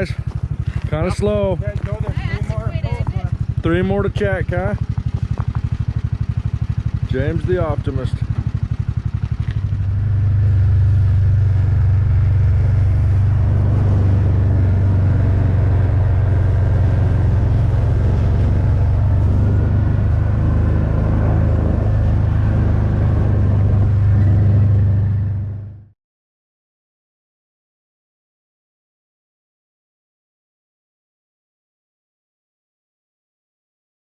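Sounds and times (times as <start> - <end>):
vehicle engine droning: 0.0 - 26.0.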